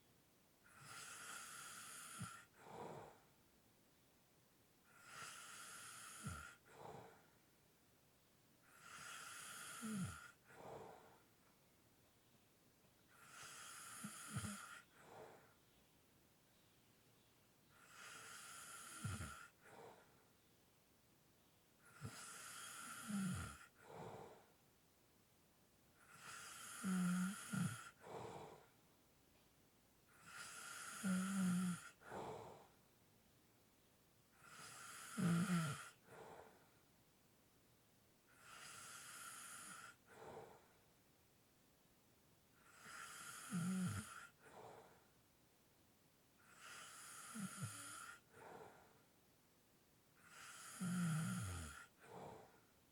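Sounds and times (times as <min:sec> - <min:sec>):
person snoring lightly: 0:08.7 - 0:11.2, 0:13.2 - 0:15.4, 0:17.8 - 0:19.9, 0:21.9 - 0:24.4, 0:26.1 - 0:28.7, 0:30.2 - 0:32.7, 0:34.4 - 0:36.5, 0:42.6 - 0:44.9, 0:46.4 - 0:48.9, 0:50.2 - 0:52.6.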